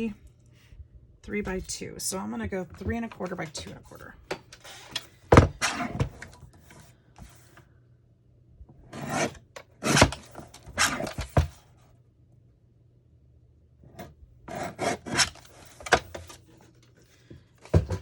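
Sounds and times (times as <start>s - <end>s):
paper being cut with scraping: 14.5s - 16.0s.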